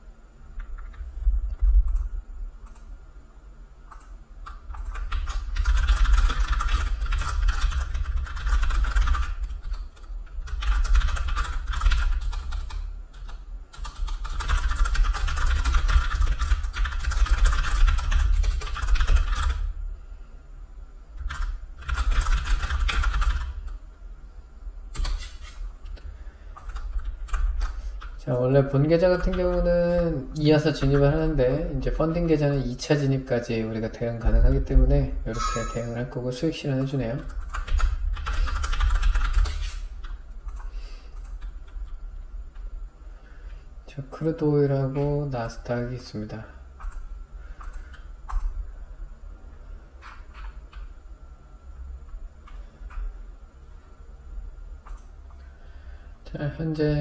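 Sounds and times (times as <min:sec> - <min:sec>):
rapid typing on keyboard: 0:03.9 - 0:19.8, 0:21.2 - 0:23.8, 0:25.0 - 0:25.4, 0:26.6 - 0:31.2, 0:36.8 - 0:42.0.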